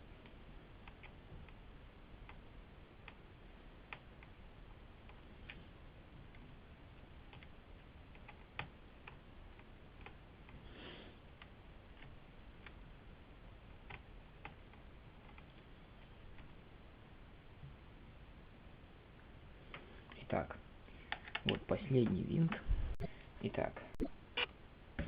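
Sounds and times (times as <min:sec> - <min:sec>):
soft breathy noise: 0:10.5 - 0:11.3.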